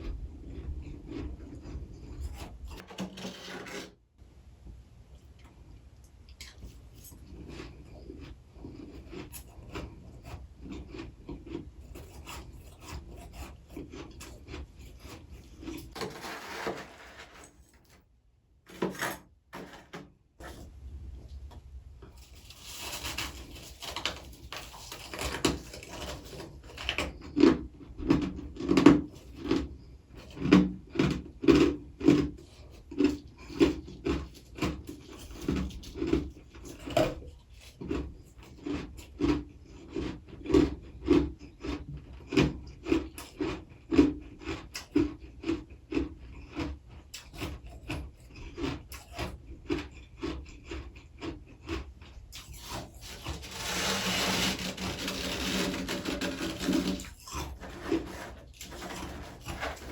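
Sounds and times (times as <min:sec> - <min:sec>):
frost being scraped: 0:02.2 - 0:04.0, 0:11.9 - 0:17.6, 0:22.2 - 0:26.9, 0:52.5 - 0:59.9
chewing frost: 0:05.2 - 0:16.0, 0:22.1 - 0:54.4, 0:56.6 - 0:59.9.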